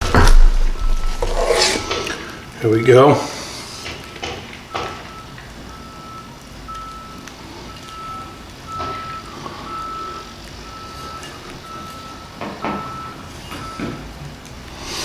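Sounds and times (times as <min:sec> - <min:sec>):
backup alarm beeping: 0:00.1 - 0:02.1, 0:04.6 - 0:14.0.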